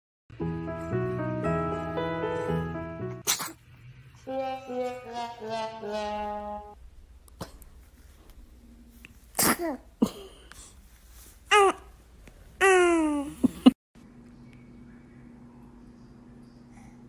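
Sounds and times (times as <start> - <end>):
baby sneezing: 3.2 - 3.6, 9.4 - 9.9.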